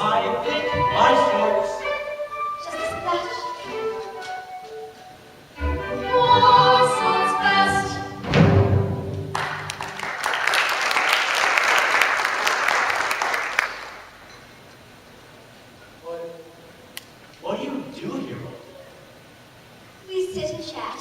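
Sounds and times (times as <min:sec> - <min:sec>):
group of voices singing: 0:00.0 - 0:03.9, 0:05.6 - 0:08.3
audience clapping: 0:09.2 - 0:14.2.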